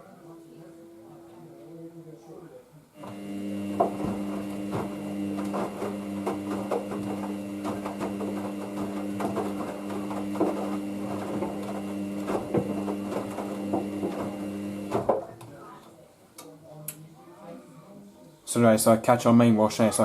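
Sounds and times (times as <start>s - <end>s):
washing machine motor humming: 3.0s - 15.2s.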